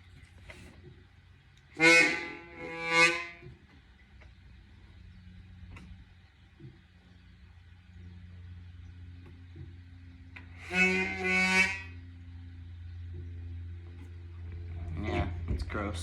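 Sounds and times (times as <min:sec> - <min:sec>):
accordion reedy note: 0:01.8 - 0:03.4, 0:10.5 - 0:12.0.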